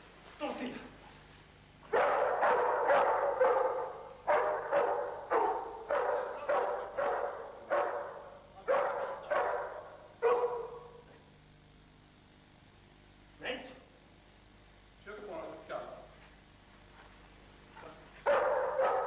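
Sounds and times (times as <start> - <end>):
dog barking: 1.8 - 11.2, 17.8 - 19.0.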